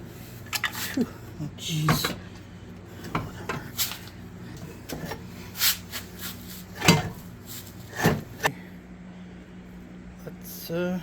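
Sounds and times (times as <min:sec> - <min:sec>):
tools and engine parts clunking: 0:00.0 - 0:05.3, 0:06.8 - 0:08.5.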